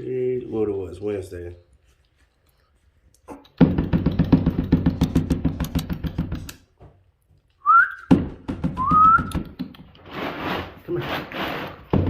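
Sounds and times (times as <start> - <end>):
person whistling rising whistle: 7.6 - 8.1, 8.8 - 9.4.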